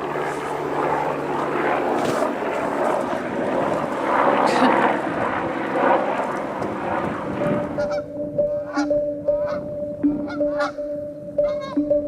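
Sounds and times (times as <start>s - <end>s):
steady rushing noise: 0.0s - 12.0s
steady low tone: 6.7s - 12.0s
geese honking: 7.6s - 10.8s, 11.4s - 11.8s.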